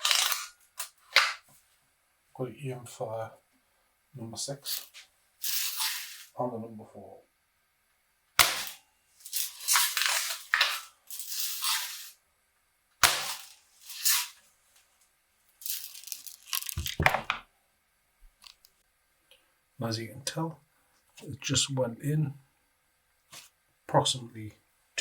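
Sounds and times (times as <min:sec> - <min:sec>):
bb rifle shots: 0:08.4 - 0:08.8
scraping handling noises: 0:09.2 - 0:12.2, 0:15.6 - 0:17.2.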